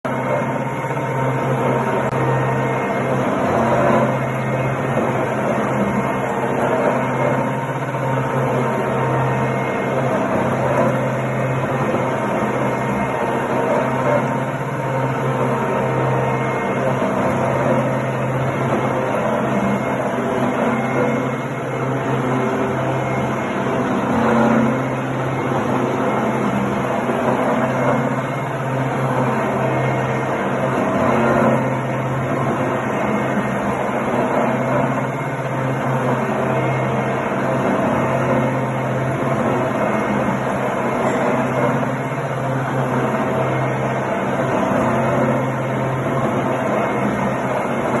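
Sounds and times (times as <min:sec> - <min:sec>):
milling machine humming: 0:00.1 - 0:48.0.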